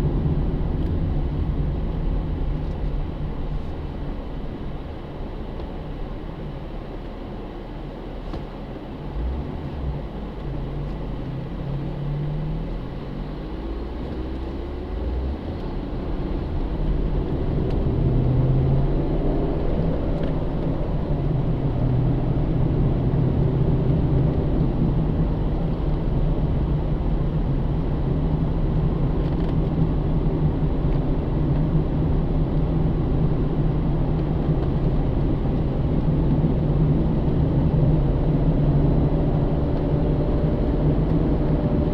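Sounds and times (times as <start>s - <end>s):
car engine accelerating: 8.9s - 41.9s.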